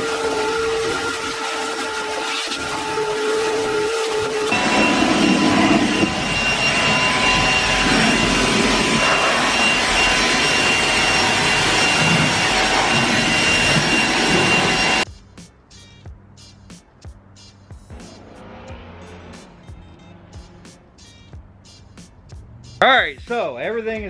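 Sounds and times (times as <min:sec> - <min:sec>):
leaf blower running: 0:00.0 - 0:15.0.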